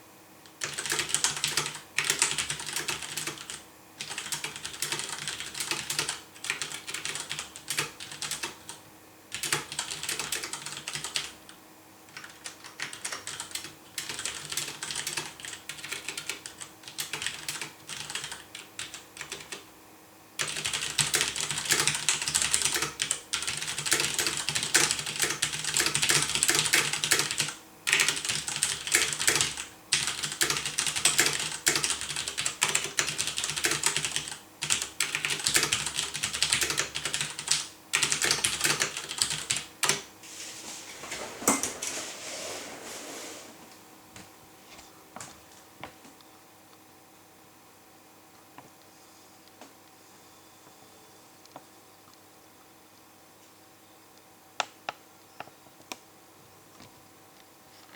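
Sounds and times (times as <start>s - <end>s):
mechanical keyboard typing: 0.5s - 11.4s, 12.1s - 19.6s, 20.4s - 40.0s.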